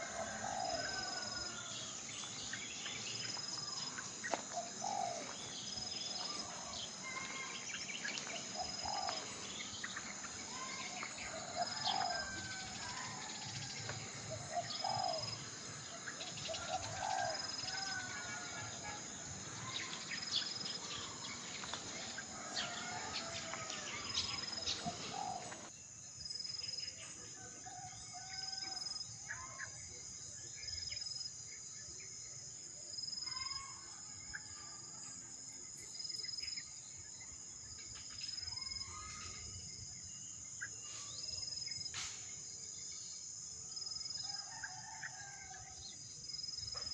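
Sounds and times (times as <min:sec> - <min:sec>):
birds chirping and calling: 0:00.0 - 0:25.7
high insect trill: 0:00.0 - 0:31.8.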